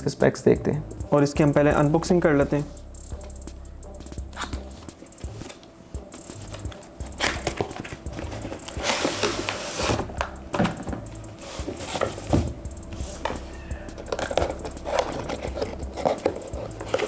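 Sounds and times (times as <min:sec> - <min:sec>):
background music: 0:00.0 - 0:17.0
packaging rustling and scraping: 0:04.4 - 0:17.0
cardboard box knocks and clicks: 0:06.5 - 0:11.0, 0:11.6 - 0:13.5.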